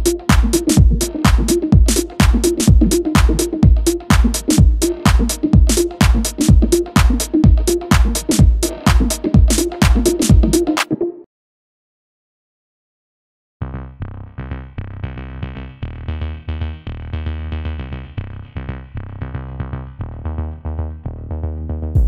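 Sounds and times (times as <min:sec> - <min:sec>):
electronic background music: 0:00.0 - 0:11.2.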